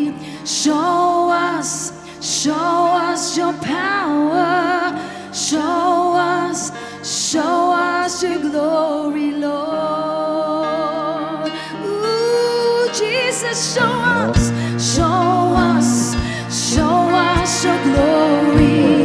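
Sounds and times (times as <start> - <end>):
person singing with vibrato: 0.0 - 19.0
sustained keyboard chords: 13.8 - 19.0
low bass: 14.1 - 19.0
kick drum beat: 14.4 - 19.0.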